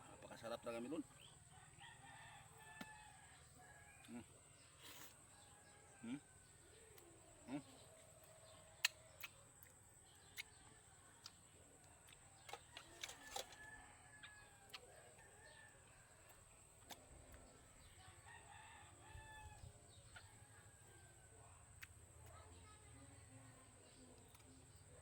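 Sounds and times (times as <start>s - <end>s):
rooster crowing faintly: 0.8s - 9.5s, 12.2s - 21.8s.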